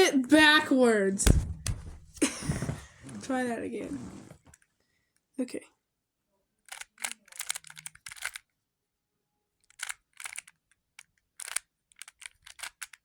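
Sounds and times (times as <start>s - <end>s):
rubik's cube plastic clacks: 6.6s - 8.5s, 9.6s - 13.0s.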